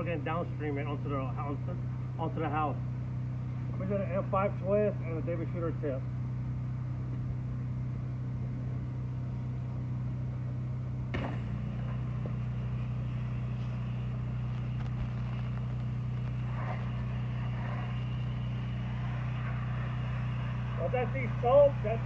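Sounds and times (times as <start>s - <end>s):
pressure washer engine running: 0.0s - 22.0s.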